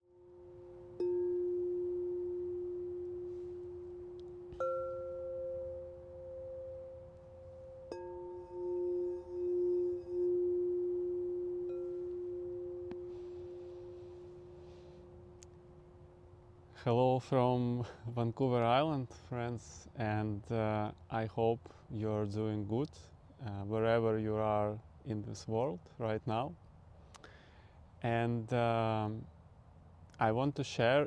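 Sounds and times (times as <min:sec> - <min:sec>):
singing bowls ringing: 0:00.1 - 0:16.4.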